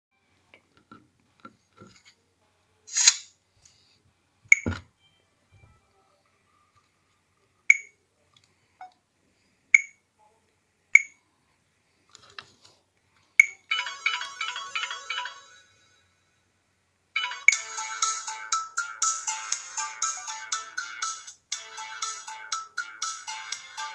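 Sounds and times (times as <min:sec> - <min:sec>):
phone ringtone melody: 0:13.7 - 0:16.0, 0:17.2 - 0:23.9.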